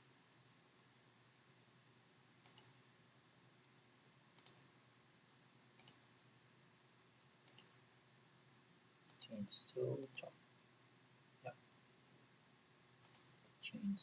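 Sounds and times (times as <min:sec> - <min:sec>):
computer mouse button clicks: 0:13.0 - 0:13.2.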